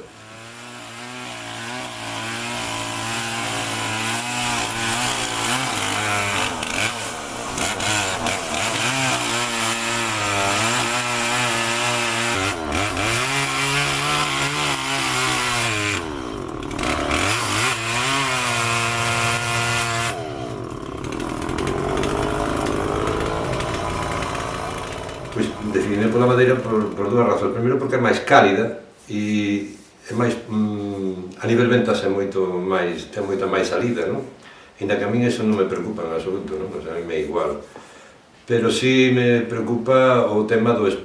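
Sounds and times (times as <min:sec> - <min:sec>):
chainsaw cutting wood: 0:00.0 - 0:27.6.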